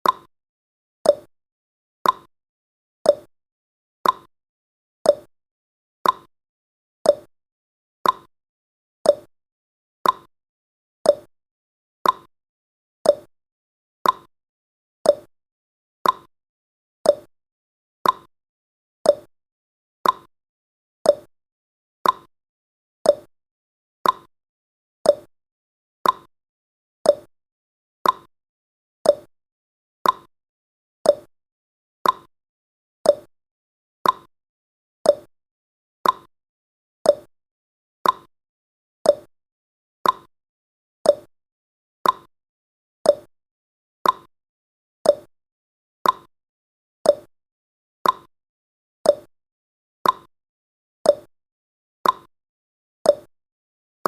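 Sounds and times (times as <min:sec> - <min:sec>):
clock ticking: 0:16.0 - 0:16.3, 0:32.0 - 0:32.3, 0:36.0 - 0:36.3, 0:40.0 - 0:40.3, 0:42.0 - 0:42.3, 0:46.0 - 0:46.3, 0:48.0 - 0:48.3.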